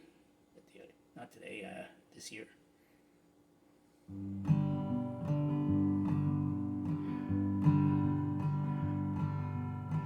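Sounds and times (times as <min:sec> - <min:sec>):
acoustic guitar strumming blues: 0:04.1 - 0:10.0.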